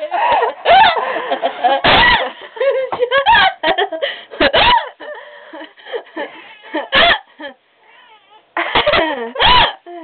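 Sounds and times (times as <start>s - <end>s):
woman laughing breathlessly: 0.0s - 7.6s.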